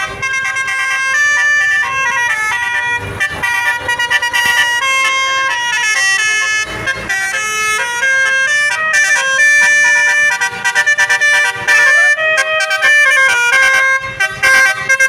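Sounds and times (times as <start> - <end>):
multi-tone bus horn melody: 0.0 - 15.0.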